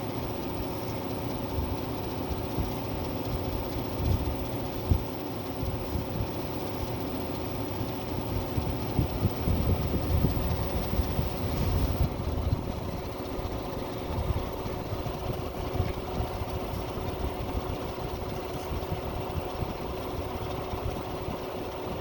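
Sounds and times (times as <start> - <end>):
motor humming: 8.4 - 22.0.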